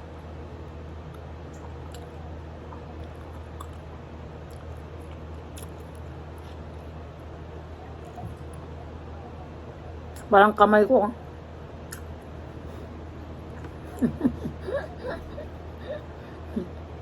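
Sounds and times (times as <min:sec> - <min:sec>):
low background hum: 0:00.0 - 0:17.0
person chewing and crunching: 0:01.0 - 0:07.0, 0:11.8 - 0:12.9.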